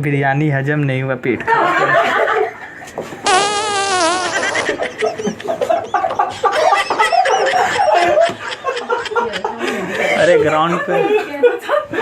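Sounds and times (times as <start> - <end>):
people snickering and laughing: 1.5 - 12.0
fart sound effect: 3.2 - 4.8.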